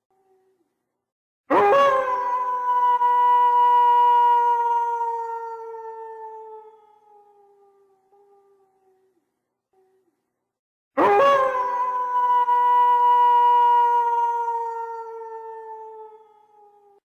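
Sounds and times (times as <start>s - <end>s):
wolf howling: 1.5s - 8.6s, 11.0s - 17.0s.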